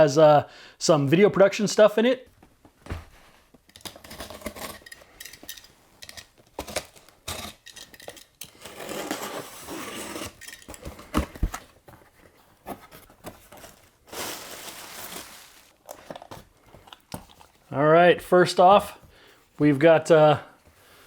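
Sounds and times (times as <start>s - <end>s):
packaging rustling: 3.7s - 17.6s
box packaging knocks and clicks: 10.6s - 12.1s.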